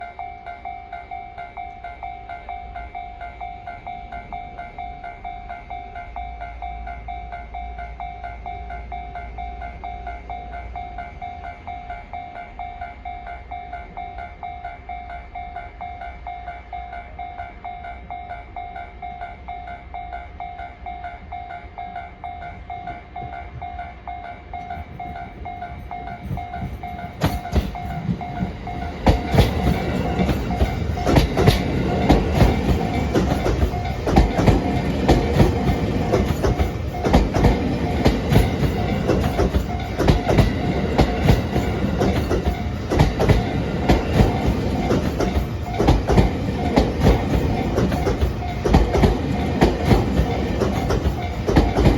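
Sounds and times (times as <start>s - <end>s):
train wheels clacking: 21.5s - 51.9s.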